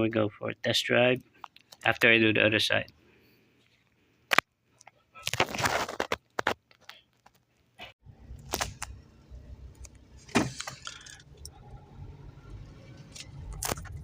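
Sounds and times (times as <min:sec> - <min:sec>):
car interior rumble: 0:08.0 - 0:14.0.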